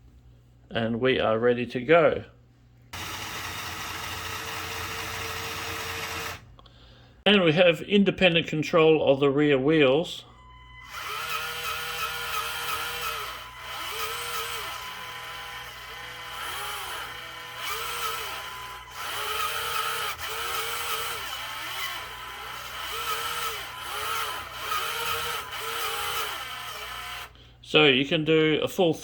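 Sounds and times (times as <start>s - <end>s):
toy motors whining: 3.0s - 6.5s, 10.4s - 27.4s.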